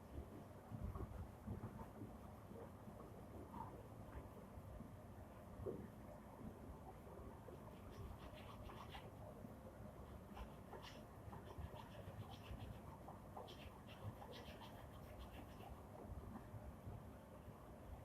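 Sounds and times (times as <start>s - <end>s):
faint irregular scratching: 7.6s - 9.1s, 10.3s - 15.8s.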